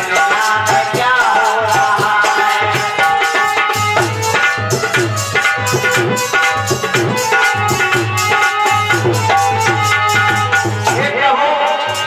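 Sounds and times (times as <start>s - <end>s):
hand drums playing: 0.0s - 12.0s
held melodic notes: 2.5s - 11.1s.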